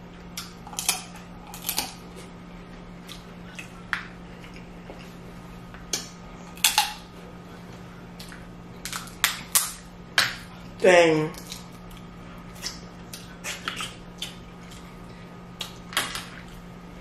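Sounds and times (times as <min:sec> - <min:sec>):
low steady hum: 0:00.0 - 0:17.0
crab shells cracking: 0:00.4 - 0:02.0, 0:08.8 - 0:10.3.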